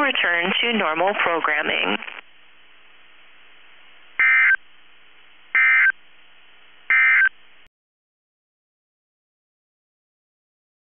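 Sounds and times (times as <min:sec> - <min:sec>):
digital data tone bursts: 0:04.2 - 0:04.6, 0:05.6 - 0:06.0, 0:06.9 - 0:07.4.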